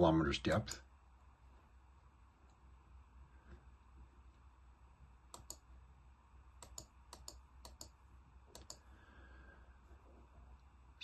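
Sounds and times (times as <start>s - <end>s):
computer mouse clicks: 5.3s - 5.7s, 6.6s - 8.9s.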